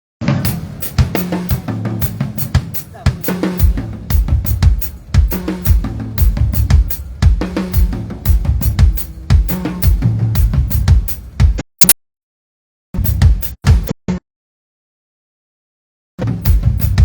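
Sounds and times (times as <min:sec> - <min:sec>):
drum kit playing fast beat: 0:00.4 - 0:11.6, 0:13.0 - 0:13.9, 0:16.2 - 0:17.0
held low notes: 0:00.5 - 0:11.6.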